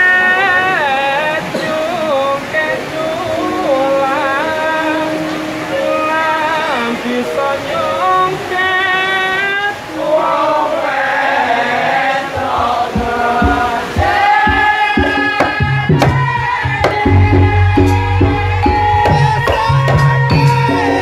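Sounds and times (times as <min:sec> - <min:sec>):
people singing: 0:00.0 - 0:21.0
traditional music: 0:03.3 - 0:08.2, 0:11.9 - 0:21.0
deep drum: 0:12.4 - 0:20.8
sharp percussion strikes: 0:12.4 - 0:21.0.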